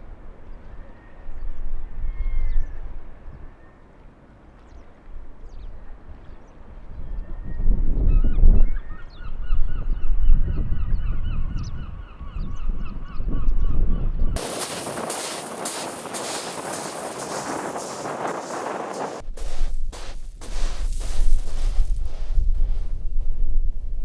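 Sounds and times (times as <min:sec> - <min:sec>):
loud steady rushing noise: 0:14.4 - 0:22.3.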